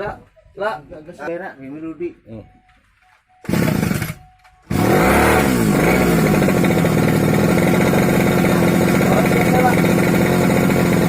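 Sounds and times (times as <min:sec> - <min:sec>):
brush cutter engine starting and revving: 0:03.4 - 0:11.0.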